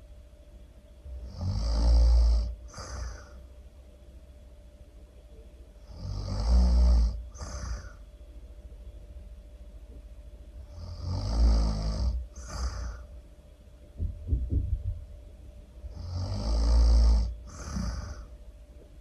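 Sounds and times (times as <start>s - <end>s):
person snoring: 1.2s - 3.4s, 5.8s - 8.0s, 10.6s - 13.1s, 15.9s - 18.3s
breathy exhale: 2.7s - 3.5s, 7.3s - 8.1s, 12.3s - 13.2s, 17.4s - 18.4s.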